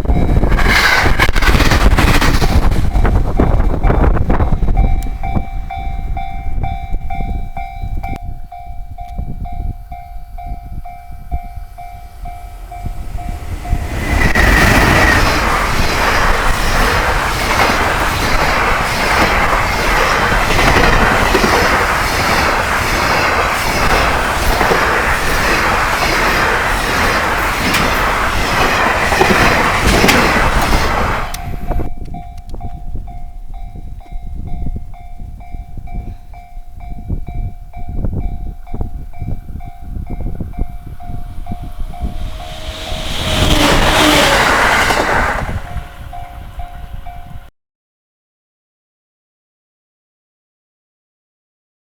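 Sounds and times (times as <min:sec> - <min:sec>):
train wheels clacking on rails: 0:00.0 - 0:05.5, 0:11.4 - 0:32.8, 0:39.8 - 0:47.5.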